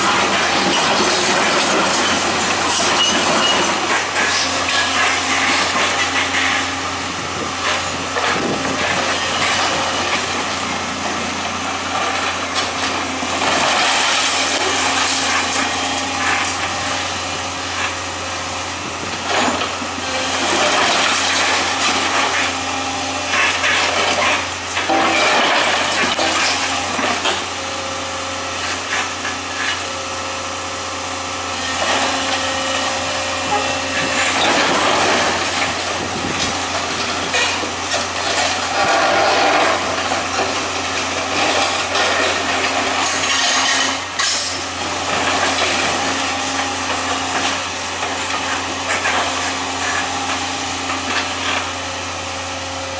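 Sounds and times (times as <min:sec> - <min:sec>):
heavy engine running: 0:00.0 - 0:52.9
debris crunching and clattering: 0:07.6 - 0:16.8, 0:19.2 - 0:22.6, 0:23.3 - 0:27.5, 0:33.9 - 0:51.7.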